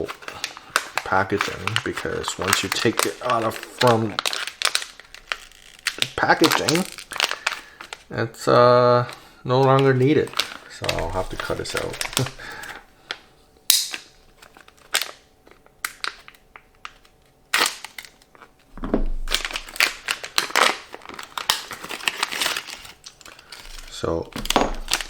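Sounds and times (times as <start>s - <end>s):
scissors snipping plastic: 0.0s - 8.0s, 15.8s - 18.5s, 19.3s - 25.0s
plastic packaging crinkling: 0.0s - 25.0s.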